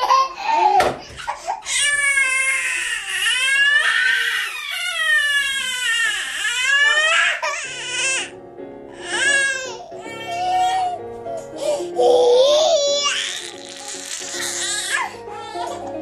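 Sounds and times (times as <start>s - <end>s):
baby crying: 0.0s - 8.3s, 8.9s - 16.0s.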